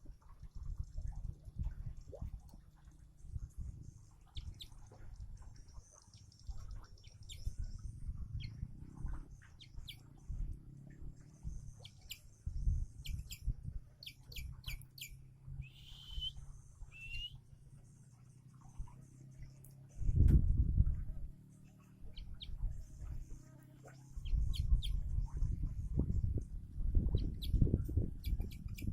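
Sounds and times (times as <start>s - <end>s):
steady low rumble: 0.0s - 28.9s
bird chirping: 6.1s - 8.6s, 11.4s - 17.4s, 22.1s - 23.0s, 24.1s - 25.0s, 27.1s - 28.9s.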